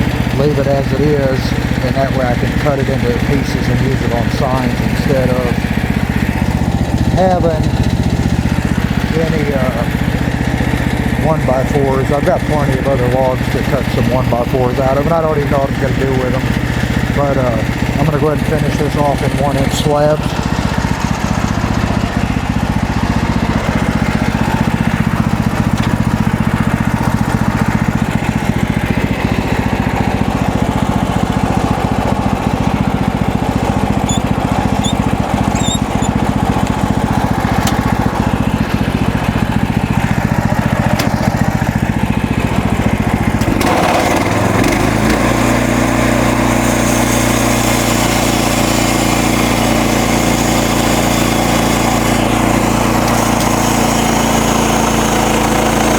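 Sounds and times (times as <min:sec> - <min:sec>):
sawmill engine running: 0:00.0 - 0:55.9
hissing rasp: 0:34.1 - 0:36.2.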